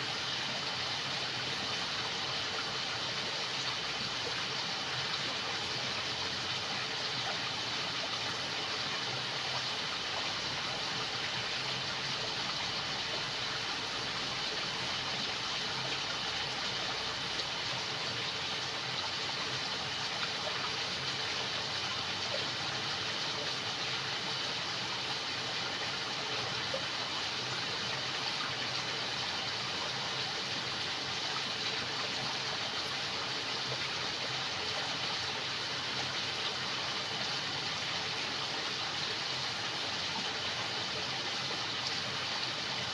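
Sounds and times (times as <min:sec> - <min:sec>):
running water: 0:00.0 - 0:42.9
crickets chirping: 0:05.9 - 0:42.9.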